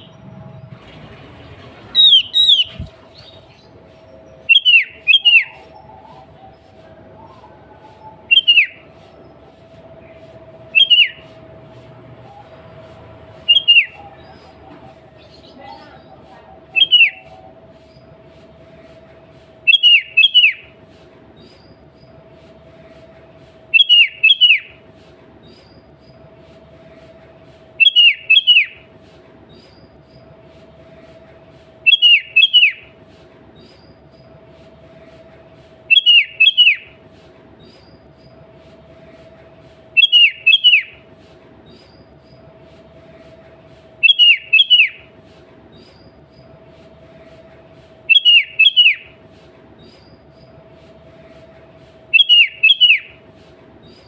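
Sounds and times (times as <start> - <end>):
steady low hum: 0.0 - 19.7
bird calling with whistled notes: 1.9 - 18.2, 19.6 - 22.3, 23.7 - 24.8, 27.8 - 30.4, 31.8 - 33.0, 35.9 - 38.5, 39.9 - 42.6, 44.0 - 46.6, 48.0 - 50.6, 52.0 - 54.0.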